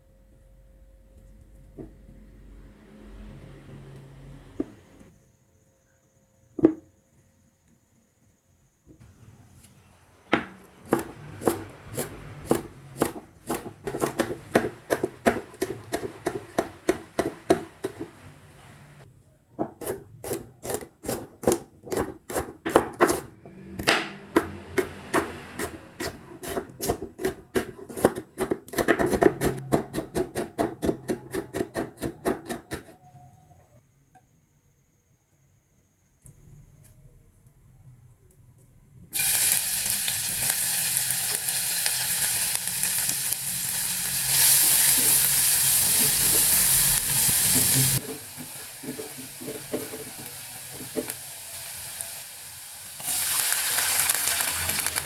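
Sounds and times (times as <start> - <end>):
cutting food on wooden board: 19.6 - 33.0.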